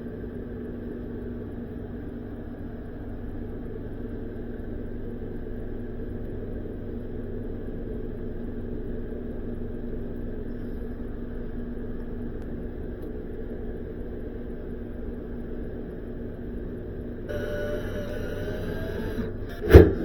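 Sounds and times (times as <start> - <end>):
electric motor humming: 17.3 - 20.0.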